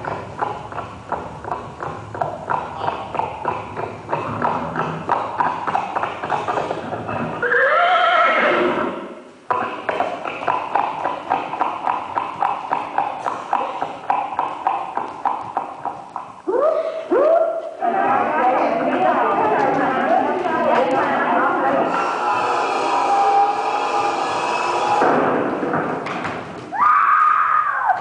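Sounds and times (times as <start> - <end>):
horse whinnying: 7.4 - 9.1
horse hooves clip-clopping: 10.0 - 16.4.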